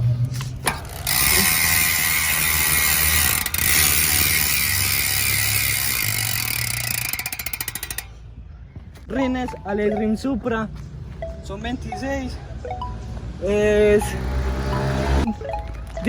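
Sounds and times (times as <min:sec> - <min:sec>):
bike freehub ratcheting: 0:00.6 - 0:08.1.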